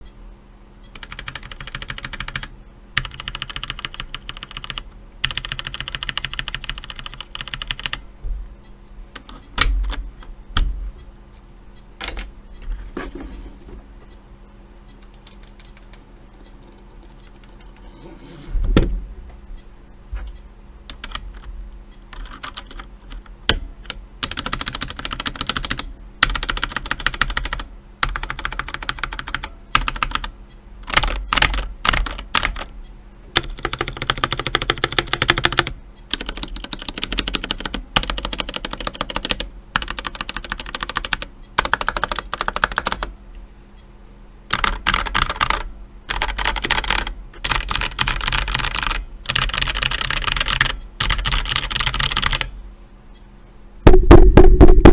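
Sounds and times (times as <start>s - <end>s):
mechanical keyboard typing: 0.9s - 8.0s, 15.1s - 16.0s, 20.9s - 21.5s, 22.1s - 32.7s, 33.4s - 43.1s, 44.5s - 52.5s.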